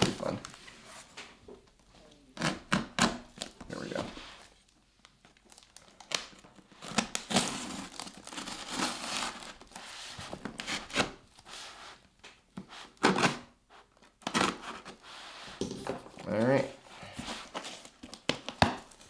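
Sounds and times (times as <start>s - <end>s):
plastic crinkling: 2.4s - 11.1s
packaging tearing: 5.5s - 9.8s.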